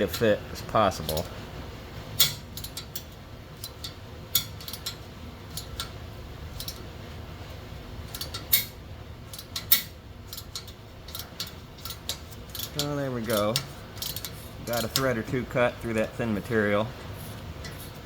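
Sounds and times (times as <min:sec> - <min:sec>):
metallic clicks and clinks: 0:08.1 - 0:15.2.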